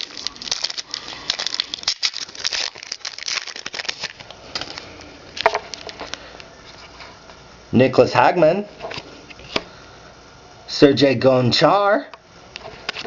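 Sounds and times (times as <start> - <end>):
trading cards rustling and clicking: 0.0 - 7.2.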